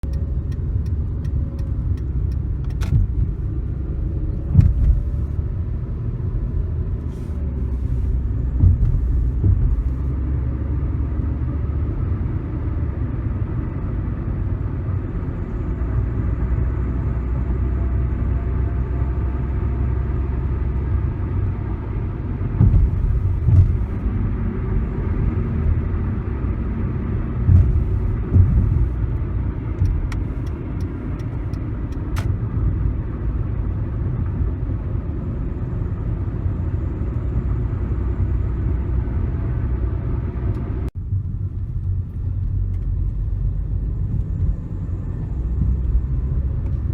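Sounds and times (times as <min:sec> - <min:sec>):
car engine running: 0:00.0 - 0:11.4, 0:18.9 - 0:35.8.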